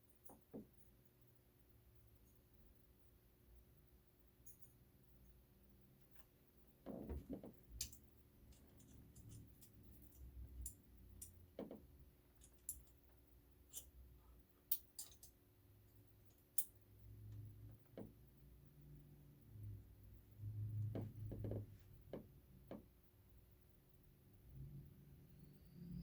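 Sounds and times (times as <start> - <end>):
low steady hum: 0.0 - 26.0.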